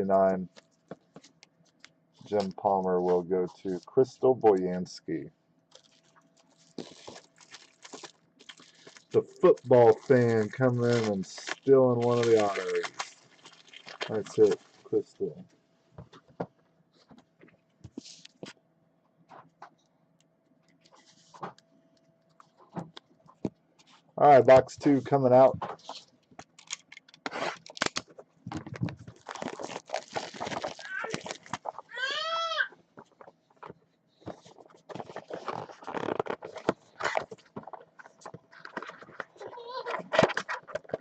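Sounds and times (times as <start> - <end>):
cards rustling: 5.7 - 15.0, 24.4 - 31.9, 34.3 - 41.0.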